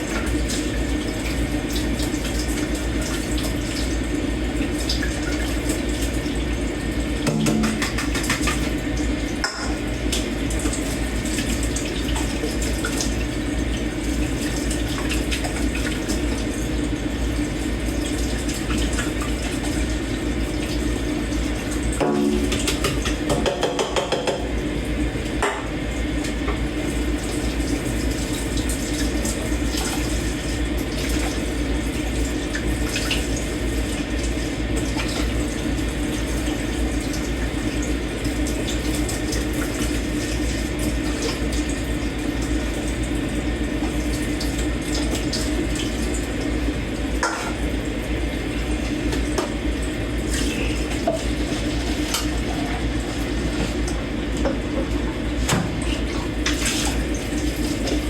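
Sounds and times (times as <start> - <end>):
tap running into a sink: 7.2 - 8.8, 9.4 - 10.8, 21.8 - 24.6, 25.4 - 26.6, 47.2 - 47.6, 49.0 - 49.6, 50.8 - 57.0.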